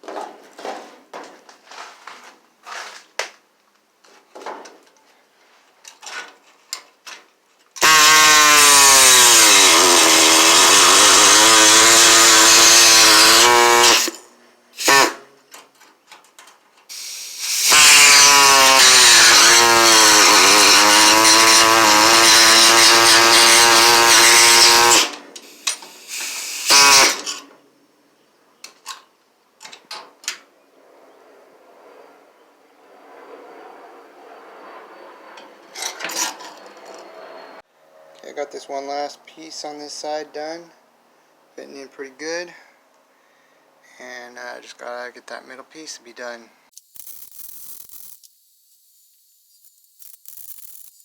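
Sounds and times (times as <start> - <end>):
electric grinder on sheet metal: 7.8 - 14.2, 14.8 - 15.2, 16.9 - 27.4.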